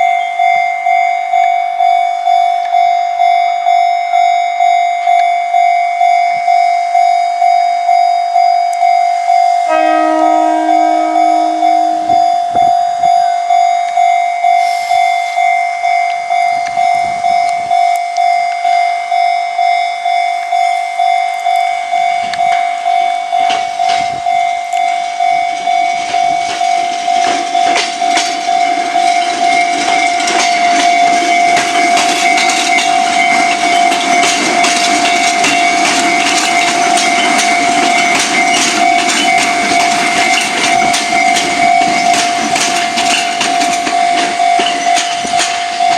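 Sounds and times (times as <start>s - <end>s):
level crossing bell dinging: 0.0s - 45.9s
train rumbling past: 8.8s - 45.9s
wheels clacking over rail joints: 22.2s - 45.9s.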